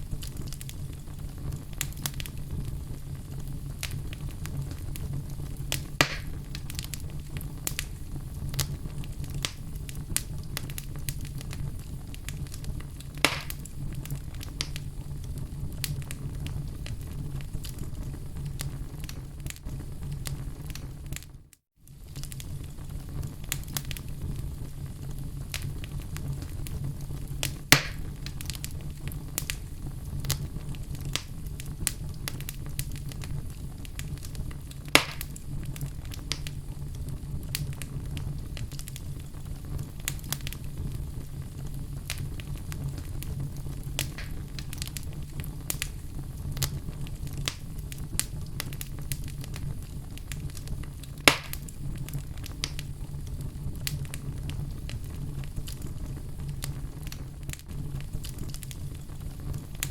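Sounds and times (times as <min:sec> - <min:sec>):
fire crackling and popping: 0:00.0 - 0:59.9.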